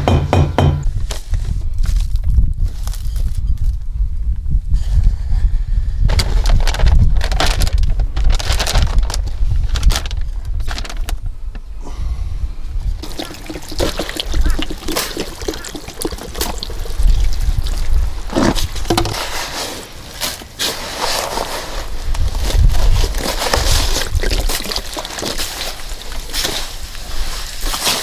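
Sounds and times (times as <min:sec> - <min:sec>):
wind buffeting microphone: 0:00.8 - 0:13.6, 0:16.5 - 0:19.1
rustling and clattering: 0:06.1 - 0:11.7.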